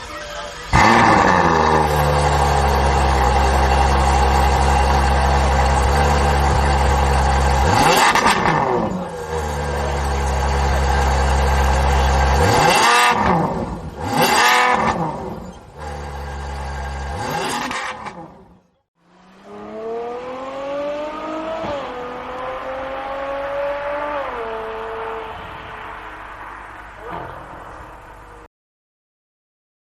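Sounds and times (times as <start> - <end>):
sports car engine revving: 0.7 - 25.4.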